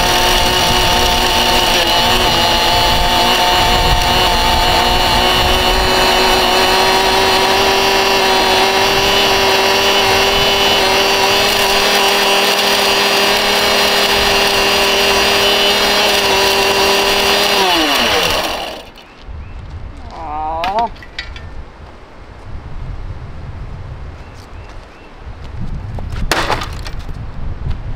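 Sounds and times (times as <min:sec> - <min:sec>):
vacuum motor winding down: 0:00.0 - 0:19.0.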